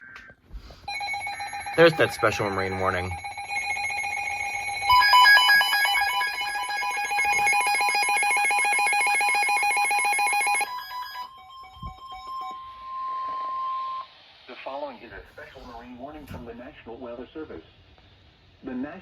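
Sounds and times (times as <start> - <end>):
warbling electronic alarm: 0.8 - 14.1.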